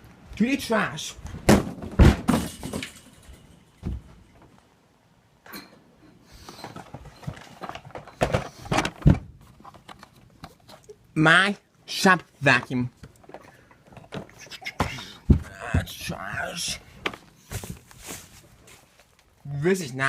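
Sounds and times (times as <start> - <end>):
objects thudding into trash can: 1.4 - 4.3, 6.6 - 9.4.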